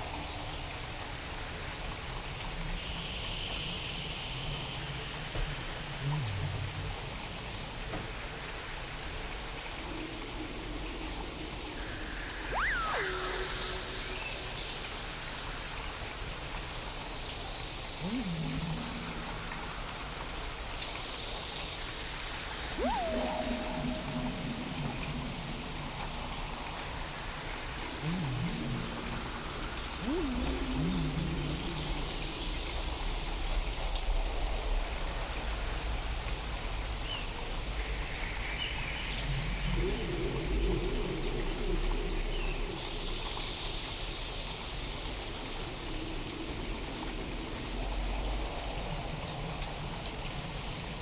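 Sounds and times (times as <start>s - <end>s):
rain falling: 0.0s - 38.3s, 39.0s - 51.0s
eerie synthetic tones: 10.2s - 15.2s, 17.6s - 21.0s, 22.4s - 33.8s, 39.2s - 43.4s.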